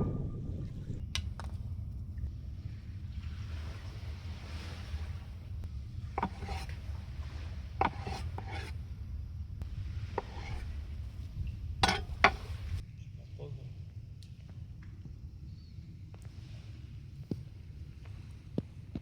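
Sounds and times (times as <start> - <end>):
wind and sea rumble: 0.0 - 19.0
scraping strokes on wood: 6.1 - 8.8, 10.1 - 10.9, 11.8 - 12.8.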